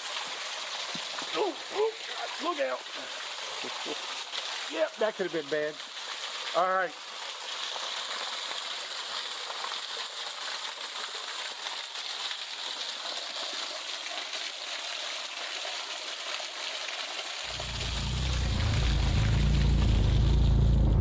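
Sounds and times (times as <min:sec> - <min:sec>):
low rumble: 0:17.5 - 0:21.0
waterfall rushing: 0:17.5 - 0:21.0.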